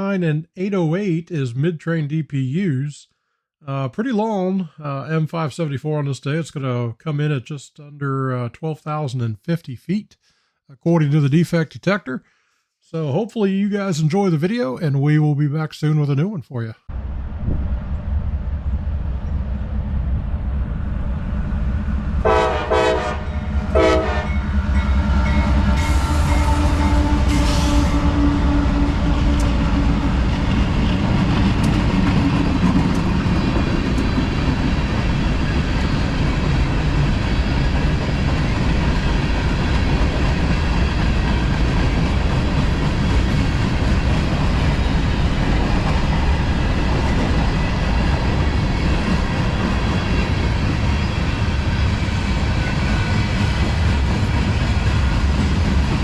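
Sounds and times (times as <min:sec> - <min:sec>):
diesel locomotives rumbling past: 0:16.9 - 0:56.0
train cars rumbling and clattering: 0:16.9 - 0:56.0
train horn blasts: 0:22.2 - 0:30.3.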